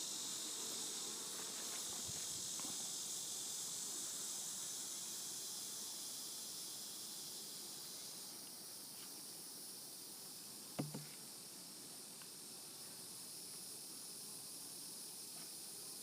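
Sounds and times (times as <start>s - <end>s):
insects droning hiss: 0.0s - 16.0s
faint knocks: 10.8s - 11.2s.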